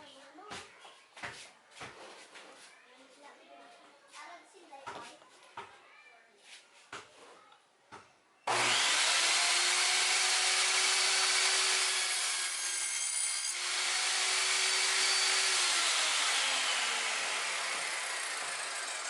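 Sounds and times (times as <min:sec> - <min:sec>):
table saw motor whine: 0:08.5 - 0:19.0.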